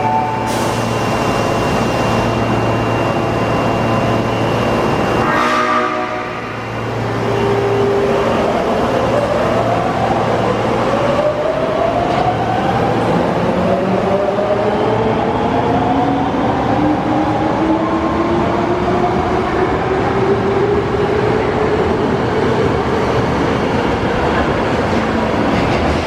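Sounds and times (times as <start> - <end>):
wheels rumbling on rails: 18.5 - 26.0
traction motor whine rising: 23.6 - 25.8.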